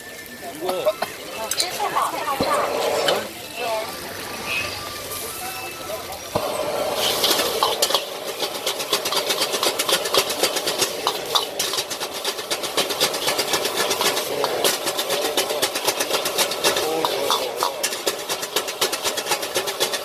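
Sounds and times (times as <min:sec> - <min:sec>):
steady frying hiss: 0:00.0 - 0:20.0
metal spatulas clacking on griddle: 0:06.4 - 0:20.0.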